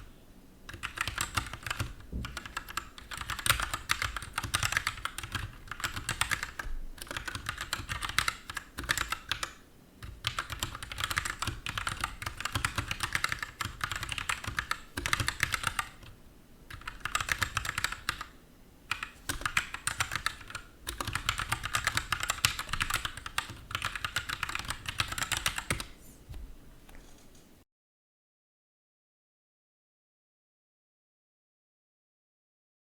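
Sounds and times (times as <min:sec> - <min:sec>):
fast mechanical keyboard typing: 0:00.7 - 0:18.3, 0:18.9 - 0:25.9.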